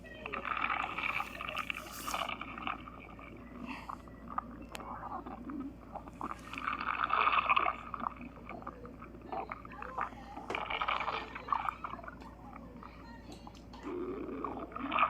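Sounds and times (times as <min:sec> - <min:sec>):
stomach growling and gurgling: 0:00.0 - 0:15.0
small squelching clicks: 0:04.2 - 0:05.2.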